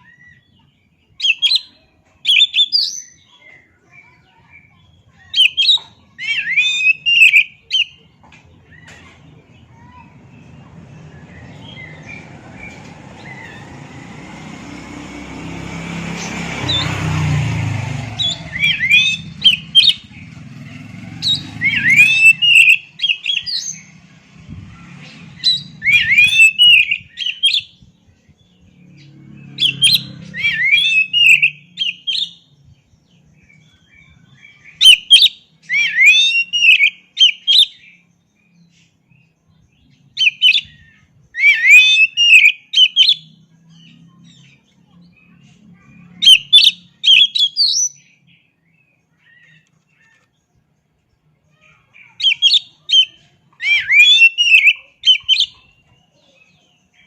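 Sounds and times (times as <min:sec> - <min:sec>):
bird singing whistled phrases: 0:01.2 - 0:03.4, 0:05.2 - 0:08.0, 0:18.2 - 0:20.1, 0:21.2 - 0:23.9, 0:25.4 - 0:27.8, 0:29.6 - 0:32.4, 0:33.5 - 0:38.0, 0:40.1 - 0:40.8, 0:41.4 - 0:43.4, 0:46.2 - 0:48.2, 0:51.6 - 0:55.8.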